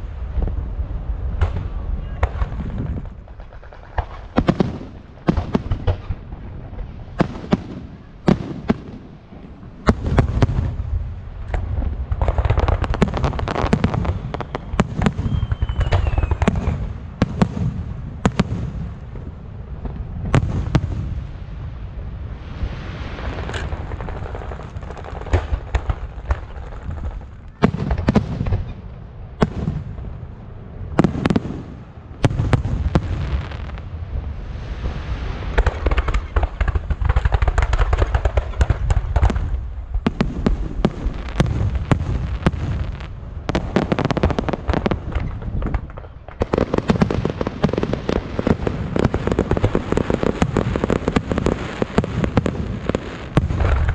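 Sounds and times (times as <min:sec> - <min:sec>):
firework bangs: 0:00.0 - 0:53.9
firework crackling: 0:00.0 - 0:53.9
falling firework whistle: 0:13.4 - 0:16.8.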